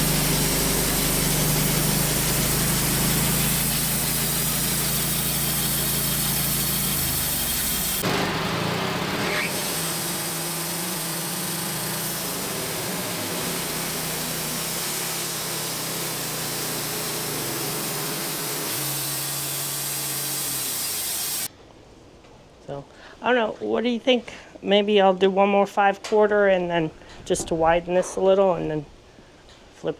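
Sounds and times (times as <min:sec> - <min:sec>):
sawmill engine sawing: 0:00.0 - 0:21.5.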